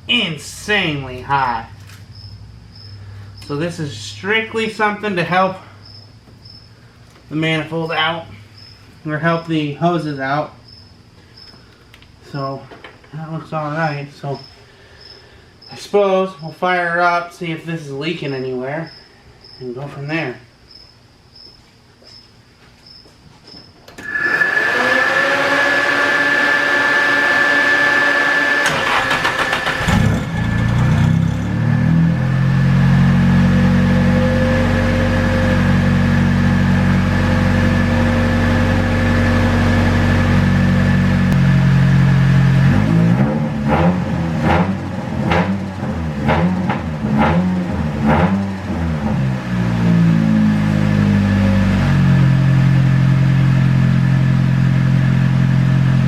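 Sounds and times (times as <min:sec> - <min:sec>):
car engine cranking and idling: 0:00.0 - 0:07.6, 0:25.8 - 0:56.0
starter whine: 0:23.8 - 0:56.0
engine revving: 0:24.0 - 0:56.0.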